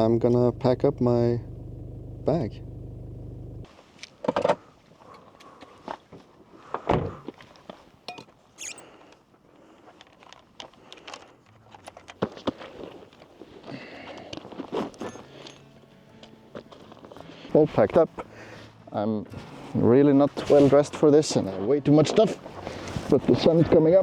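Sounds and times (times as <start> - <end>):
gear packed into backpack: 9.9 - 19.8, 22.2 - 23.4.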